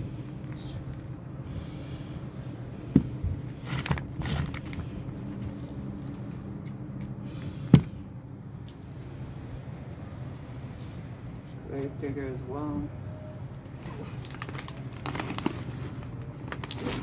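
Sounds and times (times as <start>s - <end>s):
steady low hum: 0.0s - 16.9s
packaging rustling: 3.6s - 6.4s, 13.8s - 17.0s.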